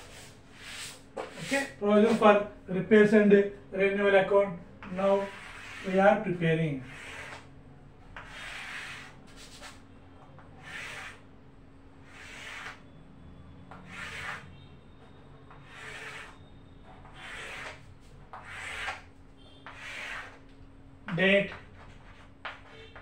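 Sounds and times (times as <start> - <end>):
pen scratching on paper: 4.8 - 6.0, 6.8 - 7.5, 8.2 - 9.8, 10.6 - 11.2, 12.1 - 12.8, 13.8 - 14.5, 15.6 - 16.4, 17.1 - 20.4.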